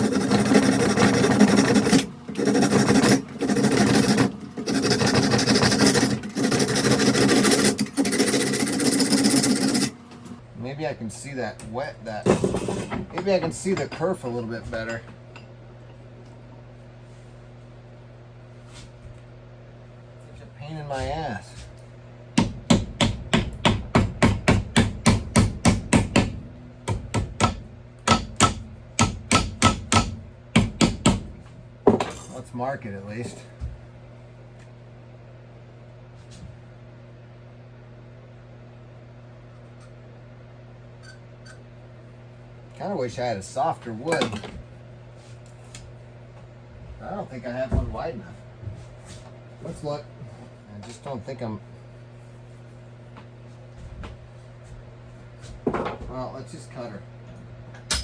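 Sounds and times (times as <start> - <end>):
saw rasping through wood: 0.0 - 10.1.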